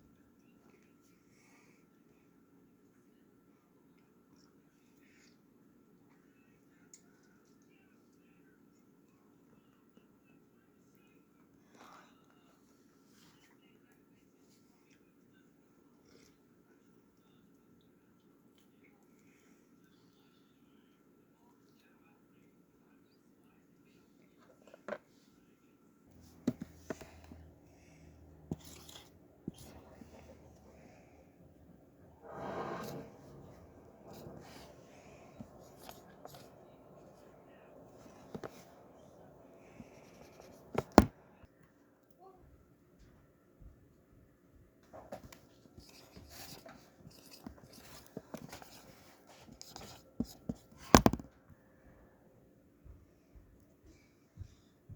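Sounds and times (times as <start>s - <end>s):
faint low hum: 0.0s - 54.9s
marker scratching on whiteboard: 26.2s - 31.3s, 32.2s - 41.1s
marker clicking on whiteboard: 28.4s - 30.8s
rubbing and tapping on whiteboard: 37.9s - 41.1s.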